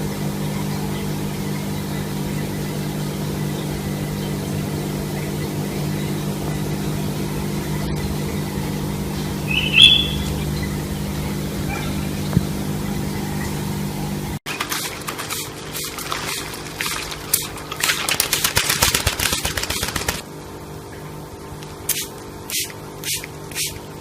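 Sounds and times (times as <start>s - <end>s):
low machine hum: 0.0s - 24.0s
parrot chirp: 9.4s - 10.6s.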